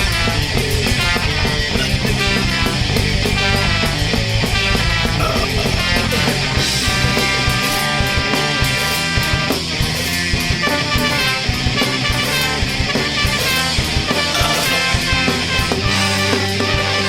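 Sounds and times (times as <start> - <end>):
ska-punk band playing: 0.0 - 17.0.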